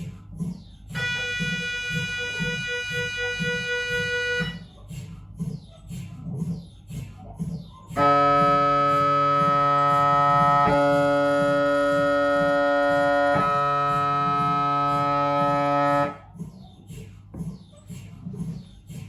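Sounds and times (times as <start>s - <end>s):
faint rhythmic pulsing: 0.0s - 19.0s
mri scanner buzzing tone: 8.0s - 16.1s.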